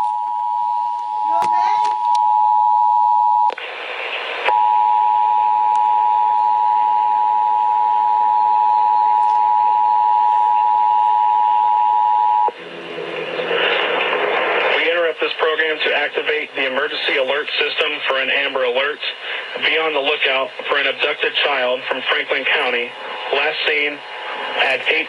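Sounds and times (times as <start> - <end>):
low hum: 0.0 - 16.6
radio static hiss: 3.5 - 4.7, 12.0 - 25.0.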